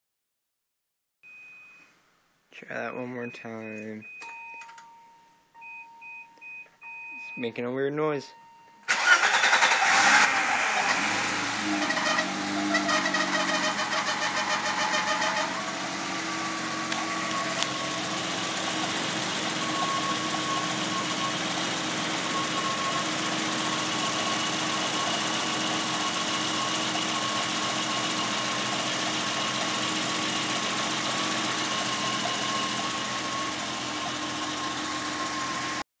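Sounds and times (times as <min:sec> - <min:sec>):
car engine starting and idling: 0:08.8 - 0:35.8
high whine: 0:10.8 - 0:35.7.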